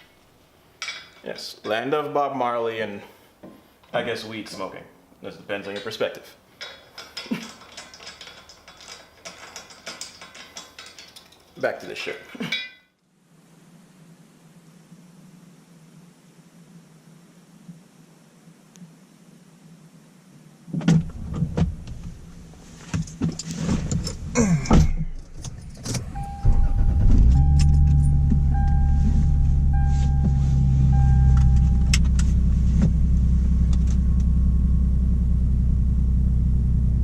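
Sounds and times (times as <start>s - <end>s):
faint low hum with hiss: 0.0s - 37.0s
car engine starting and idling: 25.2s - 37.0s
beeping chime: 26.1s - 32.1s.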